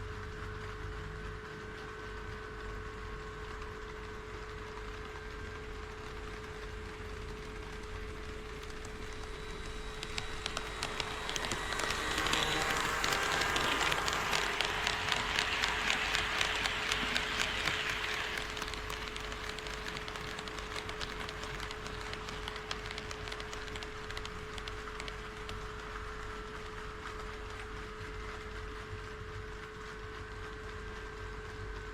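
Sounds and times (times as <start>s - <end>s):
model train wheels clicking on rails: 3.0s - 28.9s
steady hum: 6.5s - 25.8s.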